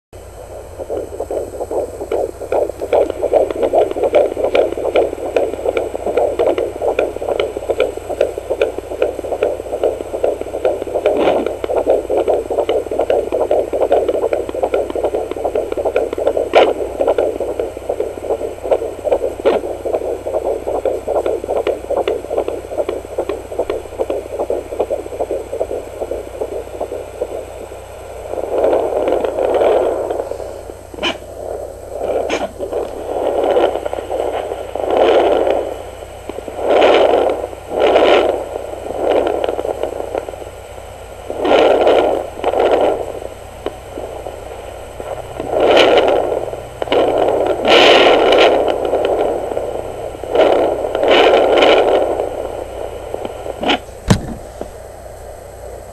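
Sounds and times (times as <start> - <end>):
fetal heartbeat whooshing pulse: 0.2 - 54.9
probe scraping clicks: 0.4 - 27.4, 28.5 - 35.6, 53.2 - 54.8.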